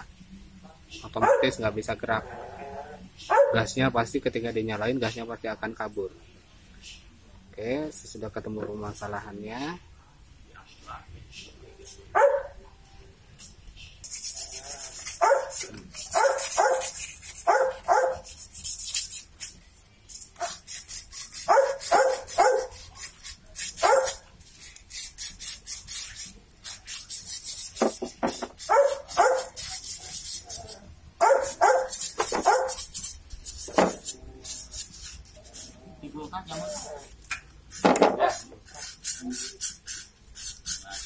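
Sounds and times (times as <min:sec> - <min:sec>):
dog barking: 0:01.2 - 0:01.6, 0:03.3 - 0:03.8, 0:12.2 - 0:12.6, 0:15.2 - 0:18.3, 0:21.5 - 0:22.8, 0:23.8 - 0:24.2, 0:28.7 - 0:29.6, 0:31.2 - 0:32.8
fast scratchy hiss: 0:13.4 - 0:35.8, 0:37.7 - 0:41.0.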